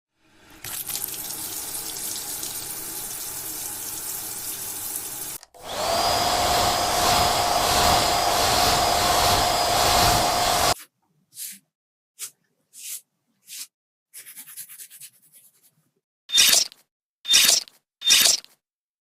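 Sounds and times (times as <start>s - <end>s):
small appliance motor whining: 5.5s - 10.8s.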